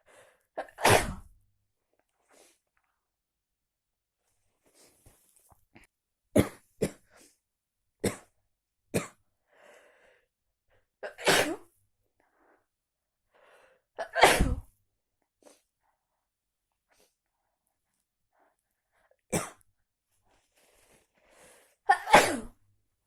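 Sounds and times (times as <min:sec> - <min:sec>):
person sneezing: 0:00.6 - 0:01.3, 0:11.0 - 0:11.7, 0:14.0 - 0:14.7, 0:21.9 - 0:22.6
faint breaths: 0:20.4 - 0:21.8.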